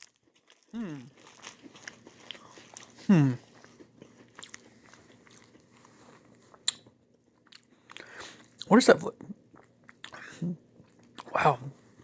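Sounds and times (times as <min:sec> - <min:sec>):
person chewing candy: 0:00.0 - 0:12.0
person humming mm: 0:00.7 - 0:01.1, 0:03.0 - 0:03.4.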